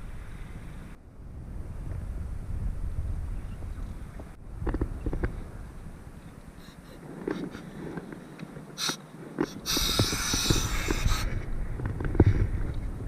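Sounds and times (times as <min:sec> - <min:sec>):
air hissing through scuba regulator: 0:08.8 - 0:11.4.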